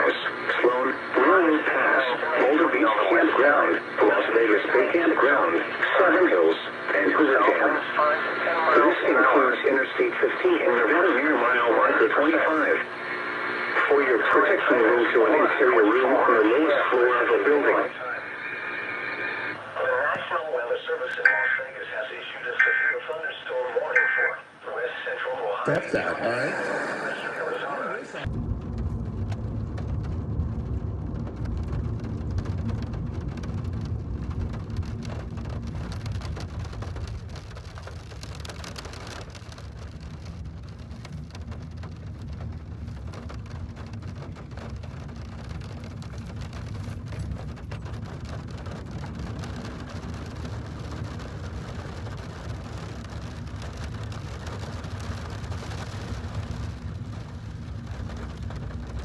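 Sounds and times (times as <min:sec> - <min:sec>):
rain falling steadily: 0:00.0 - 0:59.0
low rumble: 0:25.7 - 0:59.0.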